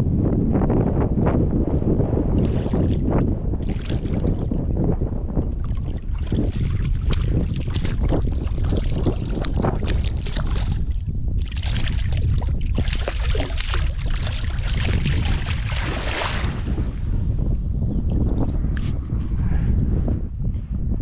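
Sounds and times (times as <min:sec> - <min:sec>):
wind buffeting microphone: 0:00.0 - 0:21.0
splashy water noise: 0:02.4 - 0:04.5, 0:05.6 - 0:16.8.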